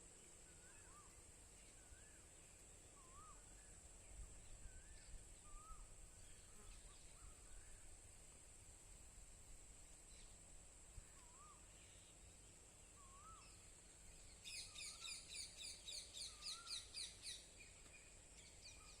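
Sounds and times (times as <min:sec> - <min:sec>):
steady high-pitched whine: 0:00.0 - 0:19.0
high downward-sweeping bird chirps: 0:14.3 - 0:19.0.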